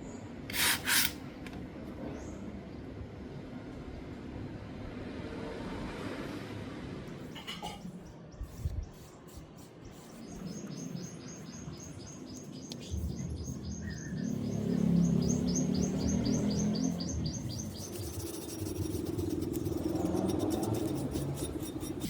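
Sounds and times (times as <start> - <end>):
small bird chirping: 8.3 - 22.0.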